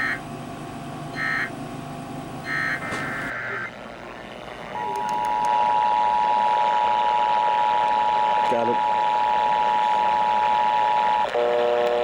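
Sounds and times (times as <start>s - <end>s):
two-tone attention signal: 1.2s - 1.5s, 2.5s - 3.8s.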